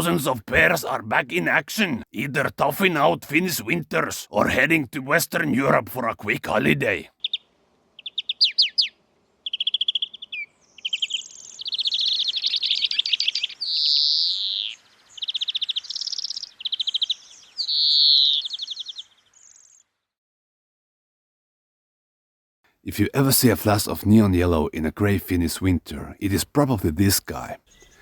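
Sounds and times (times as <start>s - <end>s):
bird singing trills: 7.2s - 19.9s.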